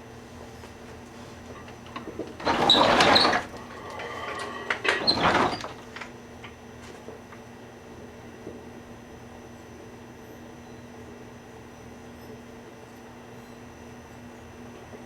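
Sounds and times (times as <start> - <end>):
microwave oven hum: 0.0 - 15.0.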